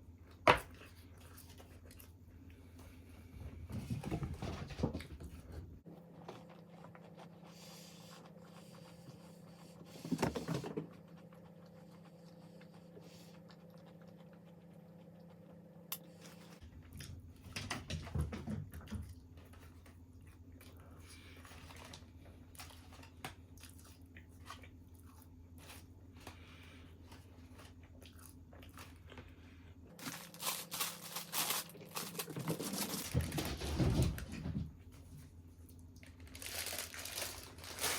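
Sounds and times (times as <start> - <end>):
low steady hum: 0.0 - 37.9
food being chewed: 0.2 - 3.0, 5.8 - 10.0, 10.7 - 17.4, 18.8 - 33.0
crunching and rustling: 29.9 - 34.6, 36.0 - 37.9.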